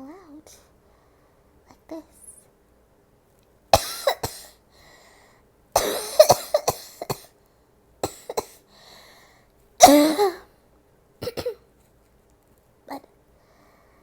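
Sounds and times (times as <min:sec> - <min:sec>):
woman coughing: 0:03.8 - 0:04.6, 0:05.8 - 0:07.3, 0:09.8 - 0:10.5, 0:11.2 - 0:11.6.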